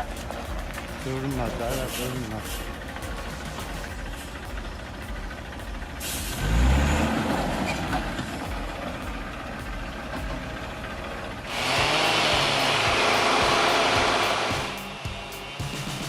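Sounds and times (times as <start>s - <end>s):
engine revving: 0.0s - 16.0s
loud steady rushing noise: 0.0s - 16.0s.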